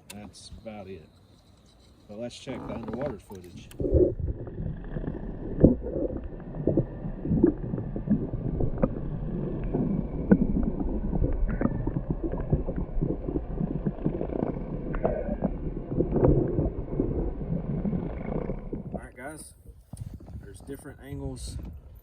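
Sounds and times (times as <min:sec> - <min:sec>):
underwater rush of water: 0:02.8 - 0:19.4.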